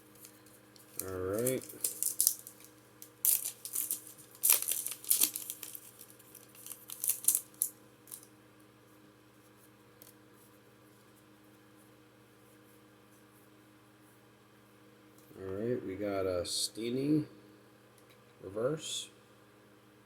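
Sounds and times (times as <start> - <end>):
foil wrapper tearing and crinkling: 0.0 - 8.3.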